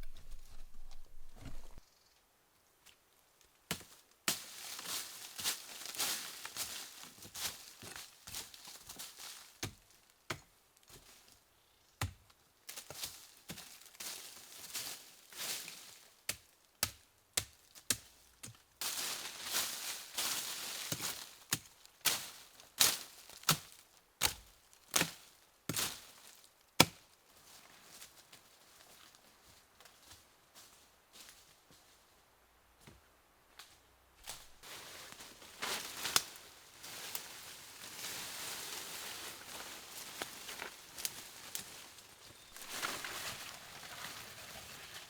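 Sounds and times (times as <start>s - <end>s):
rustling and scraping: 0.0s - 1.8s, 34.2s - 45.0s.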